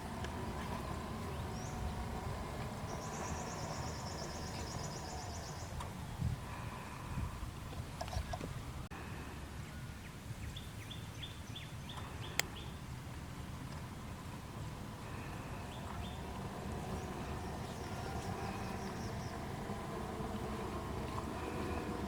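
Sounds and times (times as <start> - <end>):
low outdoor rumble: 0.0 - 10.4, 11.3 - 22.0
bird chirping: 0.6 - 5.9, 9.7 - 12.8, 15.0 - 22.0.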